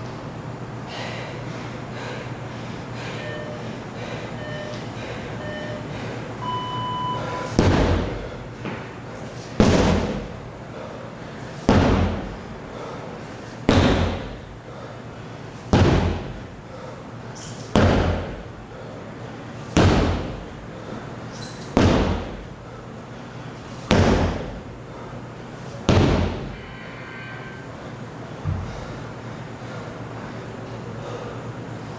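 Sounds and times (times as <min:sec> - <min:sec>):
electronic timer beeps: 0:03.2 - 0:03.7, 0:04.4 - 0:07.5
sledgehammer heavy thuds: 0:07.5 - 0:08.2, 0:09.6 - 0:10.3, 0:11.6 - 0:12.4, 0:13.6 - 0:14.4, 0:15.7 - 0:16.4, 0:19.7 - 0:20.4, 0:21.8 - 0:22.4, 0:25.8 - 0:26.6.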